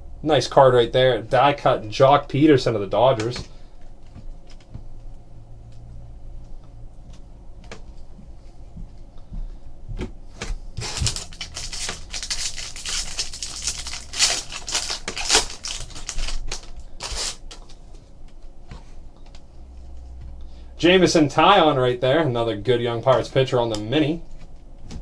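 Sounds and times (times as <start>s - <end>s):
trading cards clicking and rustling: 10.4s - 20.2s.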